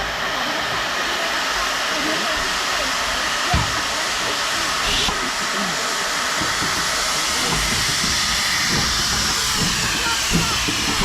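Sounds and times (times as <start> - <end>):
steam locomotive hissing: 0.0 - 11.0.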